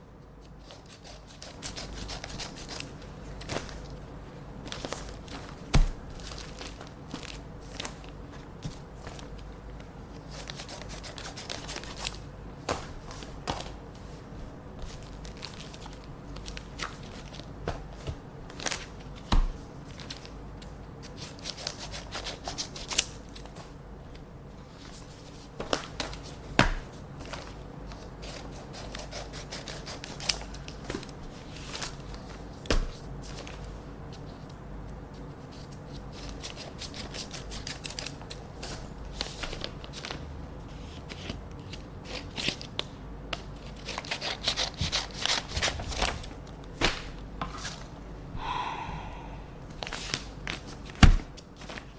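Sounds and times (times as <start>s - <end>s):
scissors snipping paper: 0.6s - 2.9s
paper crackling and rustling: 4.6s - 9.5s, 14.8s - 20.3s, 35.1s - 47.8s
steady low hum: 45.6s - 51.7s.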